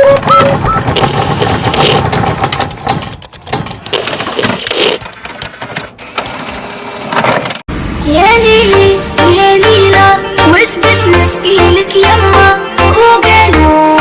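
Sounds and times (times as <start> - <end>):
mechanical engine-like ringtone: 0.0 - 1.1.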